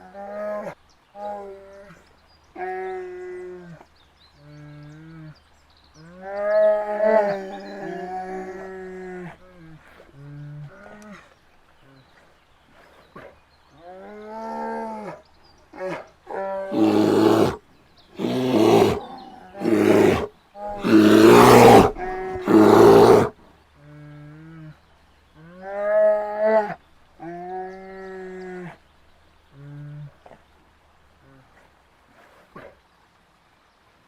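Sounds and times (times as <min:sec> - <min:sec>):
bear moaning calls: 0:16.7 - 0:17.6, 0:18.2 - 0:23.3
bear roaring: 0:16.7 - 0:17.6, 0:18.2 - 0:23.4.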